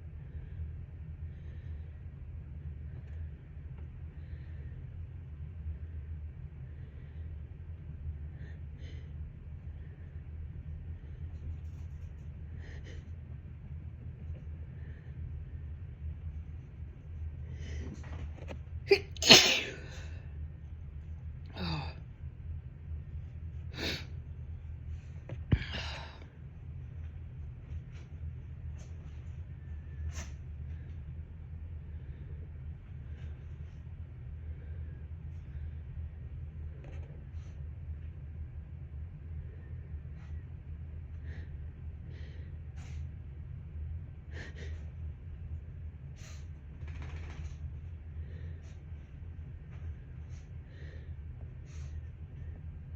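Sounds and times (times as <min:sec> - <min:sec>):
steady low hum: 0:00.0 - 0:52.9
person sneezing: 0:18.9 - 0:20.0
person sniffling: 0:18.9 - 0:20.1, 0:23.7 - 0:24.2.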